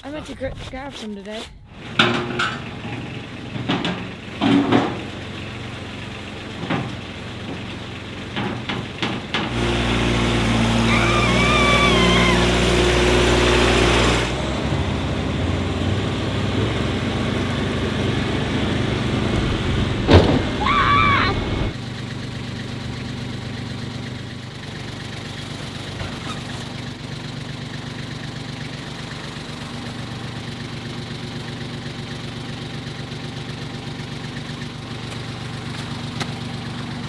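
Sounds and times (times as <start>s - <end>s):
tractor engine running: 1.7s - 37.0s
wavering high squeal: 10.8s - 12.9s.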